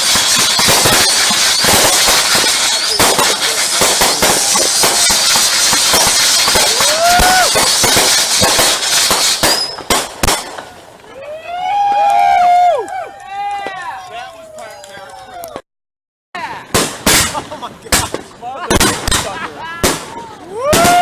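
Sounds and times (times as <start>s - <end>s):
whistling fireworks: 0.0s - 10.7s, 16.8s - 21.0s
sharp firework bangs: 0.0s - 10.8s, 16.7s - 21.0s
fireworks crackling and popping: 0.0s - 15.6s, 16.6s - 21.0s.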